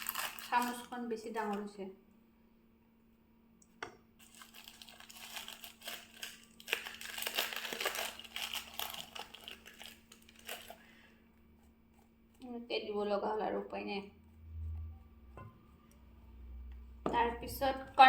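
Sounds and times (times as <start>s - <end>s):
spoon crinkling and scraping: 0.0s - 1.7s, 4.2s - 10.8s.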